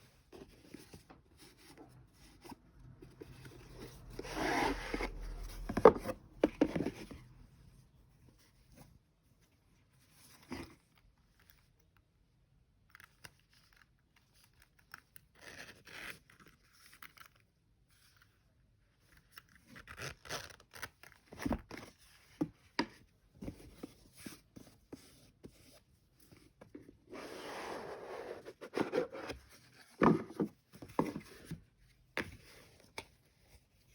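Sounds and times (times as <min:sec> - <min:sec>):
paper and cardboard rustling: 0:20.7 - 0:33.9.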